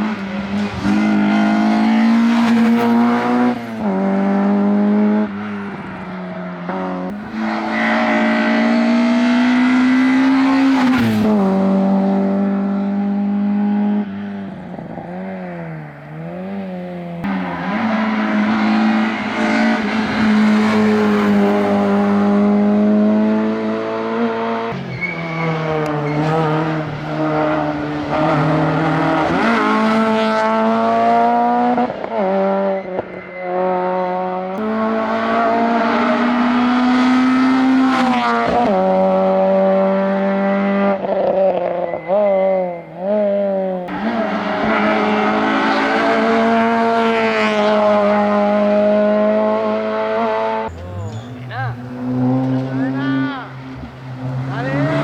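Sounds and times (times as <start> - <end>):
rally car engines revving hard: 0.0 - 55.0
tyres squealing: 24.8 - 26.8, 50.7 - 55.0.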